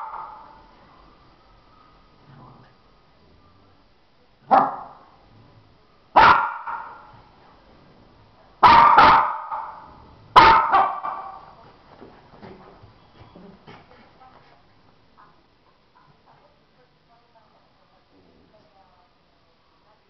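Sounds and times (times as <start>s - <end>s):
dog barking: 4.5s - 5.1s, 6.2s - 7.1s, 8.6s - 11.5s.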